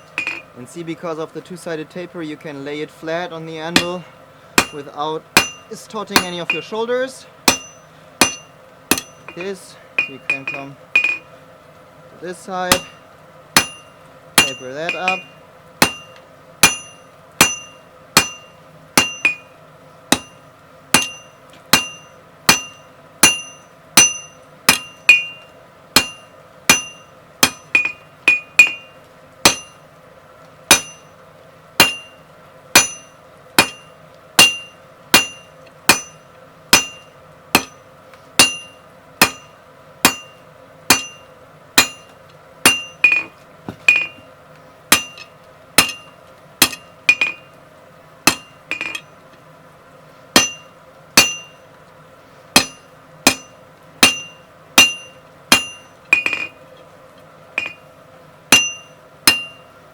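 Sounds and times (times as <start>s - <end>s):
hammer striking steel on anvil: 0.0s - 0.5s, 3.7s - 4.0s, 4.6s - 6.8s, 7.4s - 11.3s, 12.7s - 13.0s, 13.6s - 29.9s, 30.7s - 31.2s, 31.8s - 37.8s, 38.4s - 44.3s, 44.9s - 47.6s, 48.2s - 49.2s, 50.3s - 51.7s, 52.6s - 56.6s, 57.6s - 57.9s, 58.5s - 59.7s
steady hum: 0.0s - 59.9s.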